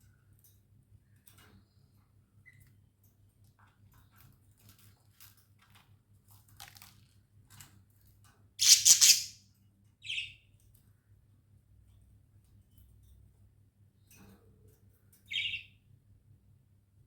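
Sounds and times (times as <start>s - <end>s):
budgerigars chirping: 8.6s - 9.4s.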